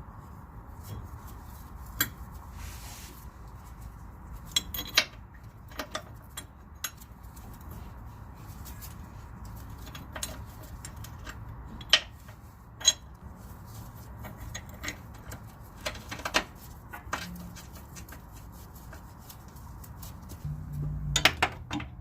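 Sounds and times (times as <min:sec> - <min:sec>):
low rumble: 0:20.4 - 0:22.0.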